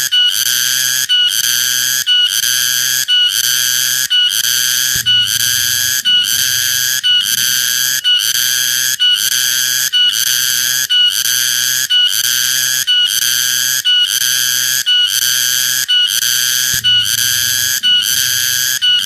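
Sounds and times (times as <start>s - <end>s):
cicada buzzing: 0.0s - 14.8s, 15.4s - 19.0s.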